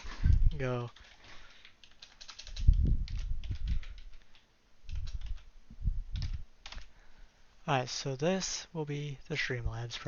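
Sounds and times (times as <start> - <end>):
typing on computer keyboard: 0.5 - 5.5, 6.1 - 6.9.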